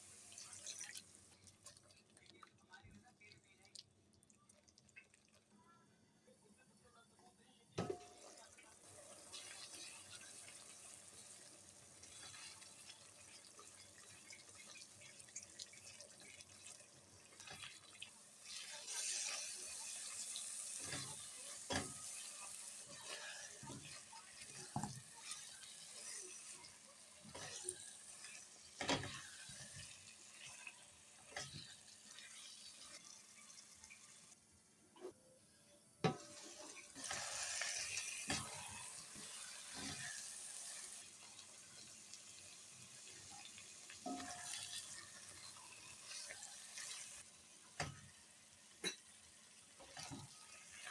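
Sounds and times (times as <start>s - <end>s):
kitchen utensils clinking: 18.9s - 26.3s, 27.2s - 29.9s, 44.0s - 47.0s, 48.8s - 49.2s.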